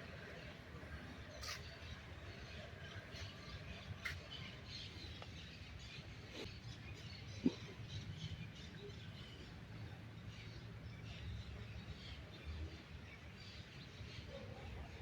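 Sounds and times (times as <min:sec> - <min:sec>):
birds chirping and calling: 0:01.2 - 0:12.2.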